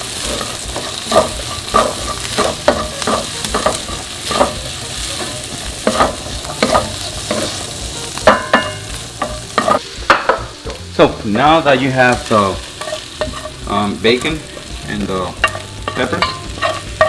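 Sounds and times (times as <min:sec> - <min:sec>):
food sizzling in a frying pan: 0:00.0 - 0:17.0
utensil scraping a pan: 0:00.0 - 0:17.0
ringing clank on a pan: 0:00.2 - 0:10.6, 0:15.4 - 0:17.0.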